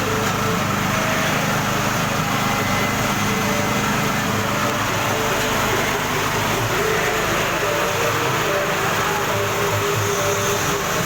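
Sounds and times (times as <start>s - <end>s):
machine motor drone: 0.0s - 11.0s.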